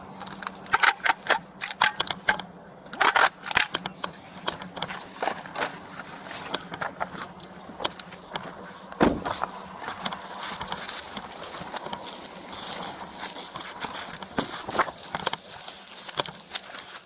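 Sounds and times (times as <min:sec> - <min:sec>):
rustling: 0:04.1 - 0:17.0
loud thump: 0:09.0 - 0:09.5.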